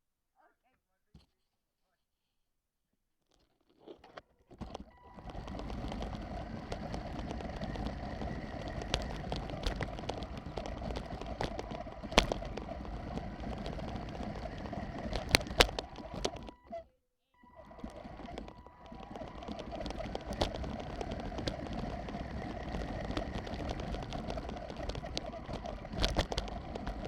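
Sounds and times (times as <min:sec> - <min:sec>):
rc truck rumbling over ground: 0:04.6 - 0:27.0
high motor whine: 0:04.9 - 0:16.8, 0:17.4 - 0:27.0.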